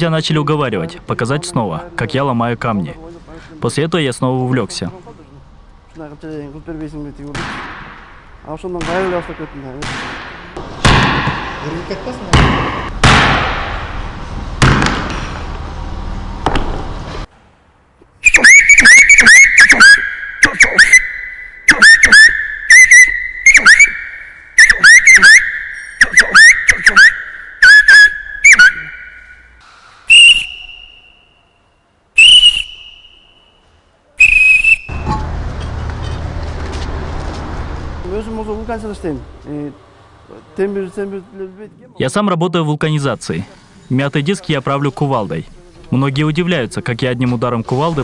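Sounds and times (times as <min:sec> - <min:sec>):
man whistling birdsong: 0:18.2 - 0:29.5, 0:30.1 - 0:31.5, 0:32.2 - 0:33.6, 0:34.2 - 0:35.0.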